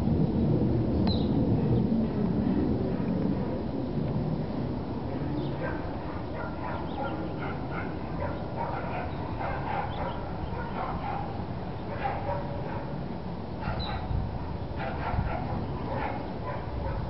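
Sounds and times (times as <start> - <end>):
steady low rumble: 0.0 - 17.0
dogs barking and yipping: 5.6 - 13.0, 13.6 - 17.0.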